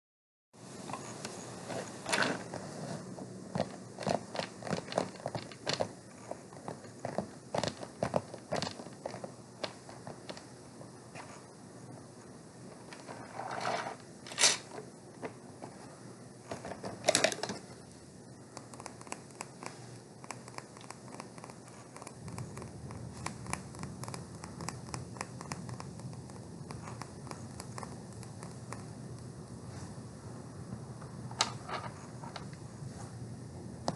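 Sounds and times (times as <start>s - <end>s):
purse rustling and scraping: 12.9s - 14.7s
small clicks and taps: 18.5s - 29.3s.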